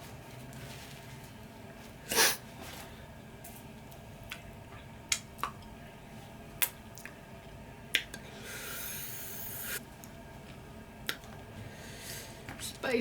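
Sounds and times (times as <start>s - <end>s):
short hiss: 8.6s - 9.8s.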